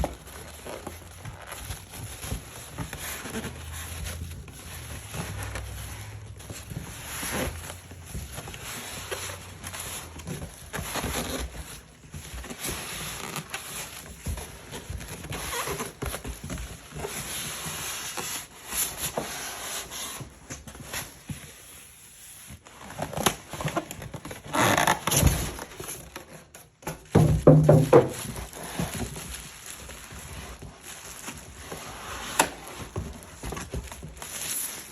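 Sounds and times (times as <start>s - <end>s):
packaging rustling and crackling: 0.0s - 34.9s
short knocks: 27.2s - 28.2s.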